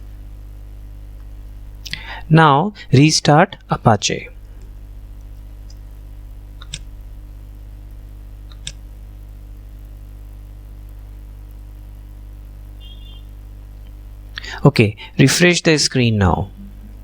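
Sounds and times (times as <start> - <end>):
low electrical hum: 0.0 - 17.0
computer mouse clicks: 6.6 - 6.9, 8.5 - 8.8.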